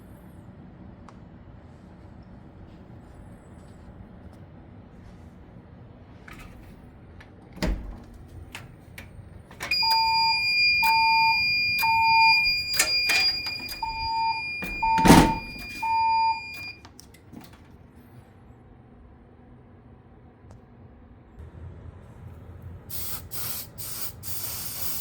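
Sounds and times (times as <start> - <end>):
clicks: 8.6 - 17.6
fire alarm beeps: 9.6 - 16.9
steady high-pitched tone: 9.7 - 16.8.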